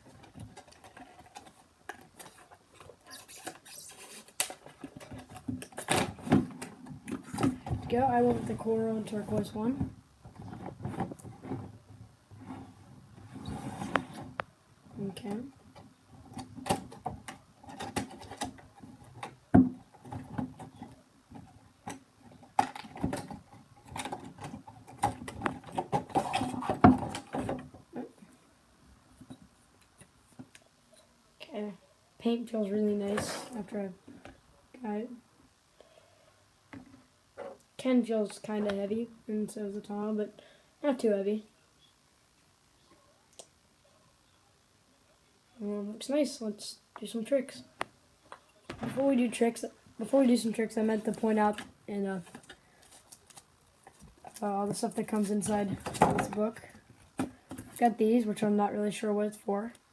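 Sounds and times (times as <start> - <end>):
packaging rustling: 52.2 - 56.1.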